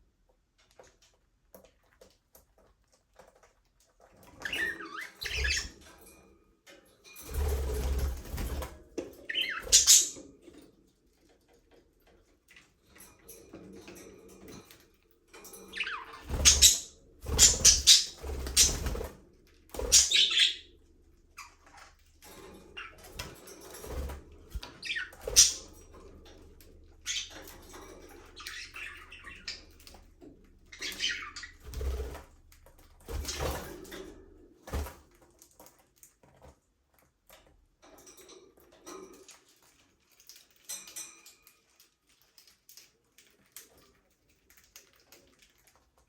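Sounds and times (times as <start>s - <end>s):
budgerigars chirping: 9.3s - 10.2s, 15.8s - 18.9s, 19.9s - 20.7s, 24.8s - 25.7s, 30.7s - 31.6s.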